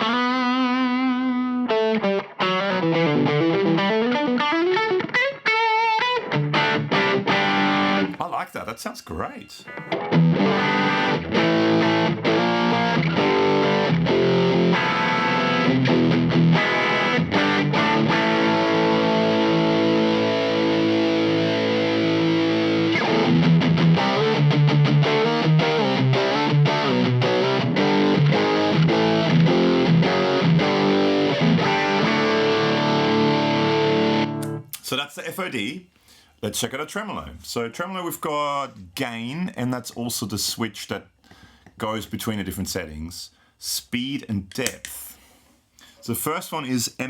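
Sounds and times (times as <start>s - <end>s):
distorted electric guitar: 0.0s - 8.2s, 9.6s - 34.7s.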